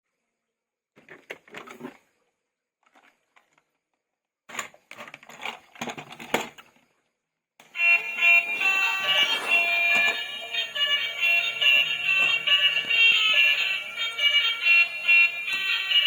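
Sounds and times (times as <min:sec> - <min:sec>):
plastic toys and packaging clattering: 0:01.0 - 0:02.1, 0:02.8 - 0:07.0, 0:07.7 - 0:16.0
loud music: 0:08.0 - 0:16.0.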